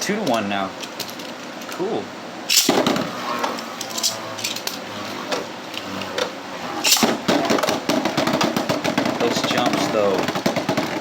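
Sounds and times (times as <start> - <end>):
spinning tops clashing: 2.5 - 4.8, 6.8 - 11.0.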